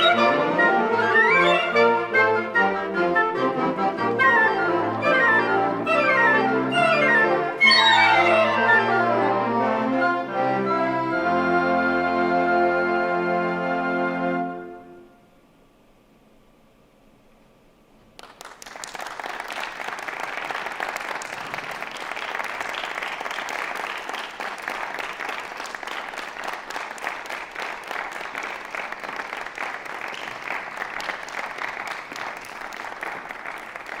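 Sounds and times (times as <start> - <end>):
audience applauding: 18.2 - 34.0.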